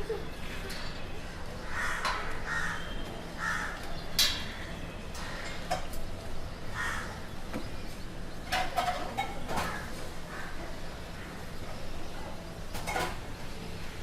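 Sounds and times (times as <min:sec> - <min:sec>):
low street rumble: 0:00.0 - 0:14.0
crows cawing: 0:01.6 - 0:03.8, 0:06.7 - 0:07.2.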